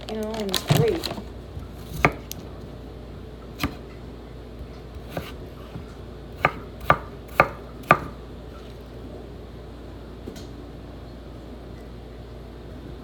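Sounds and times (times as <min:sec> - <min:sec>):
knife chopping on cutting board: 0:01.8 - 0:02.4, 0:03.6 - 0:03.9, 0:05.0 - 0:08.2.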